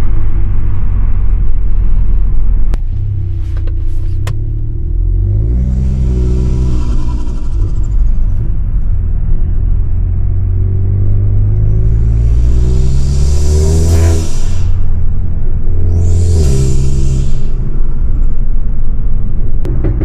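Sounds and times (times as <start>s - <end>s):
car engine revving: 0.0s - 20.0s
turbo hiss: 12.2s - 15.0s, 15.8s - 17.8s.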